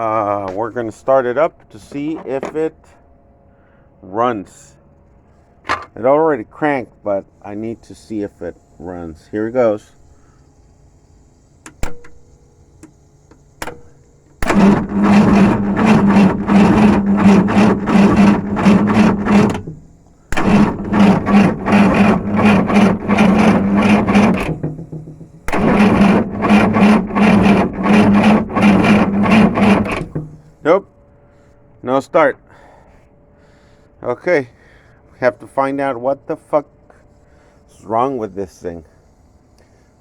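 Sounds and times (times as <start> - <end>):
engine cranking on starter: 11.6 - 30.6.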